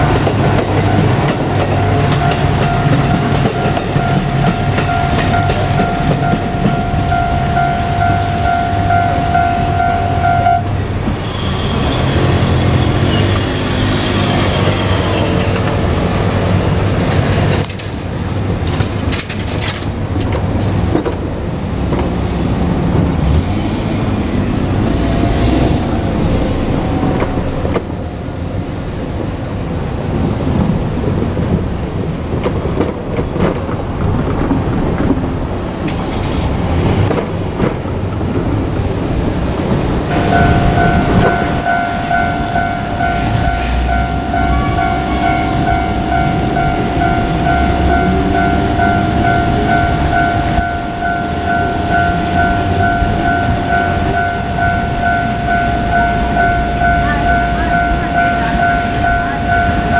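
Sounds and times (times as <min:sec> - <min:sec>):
wheels clattering over rail joints: 0:00.0 - 0:09.8, 0:11.9 - 0:59.9
diesel railcar engine rumble: 0:00.0 - 0:59.9
pulsing electronic tone: 0:40.1 - 0:59.9.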